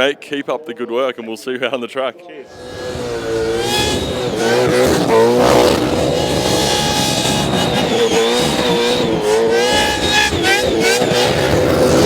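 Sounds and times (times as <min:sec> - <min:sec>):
car engine at high revs: 0:02.5 - 0:12.0.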